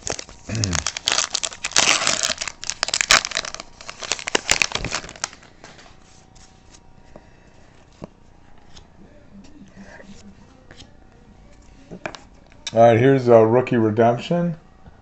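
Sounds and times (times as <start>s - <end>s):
foil wrapper crinkling and tearing: 0.0s - 5.5s.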